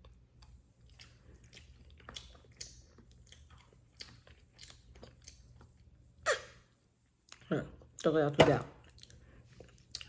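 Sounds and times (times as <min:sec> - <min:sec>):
person chewing: 0:00.0 - 0:06.5, 0:08.8 - 0:10.0.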